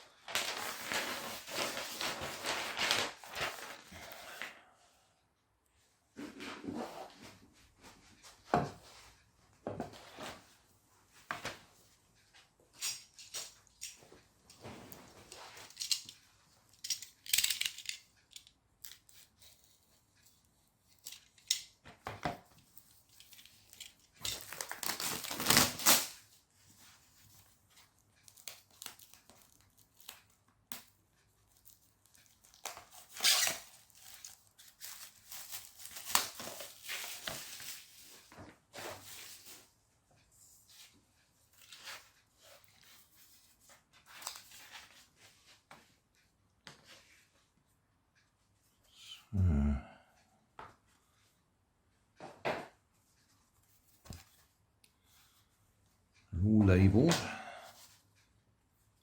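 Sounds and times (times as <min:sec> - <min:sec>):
plastic packaging crinkling and tearing: 0:00.2 - 0:04.2, 0:23.2 - 0:26.2, 0:28.2 - 0:30.9, 0:31.5 - 0:38.1.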